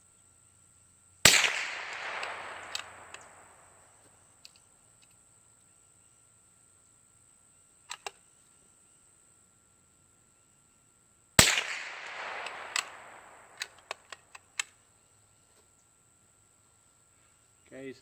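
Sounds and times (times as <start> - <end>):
rifle shot echoing: 1.2 - 4.0, 11.4 - 14.4
sharp clicks: 1.3 - 3.8, 7.9 - 8.2, 11.4 - 14.7.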